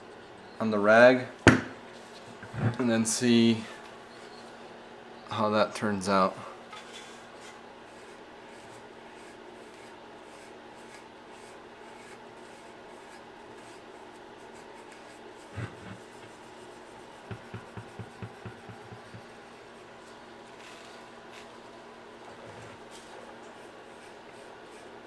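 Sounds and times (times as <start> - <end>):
light knocks: 1.5 - 1.8
thump: 1.5 - 1.8
rag rubbing on metal: 15.5 - 19.4.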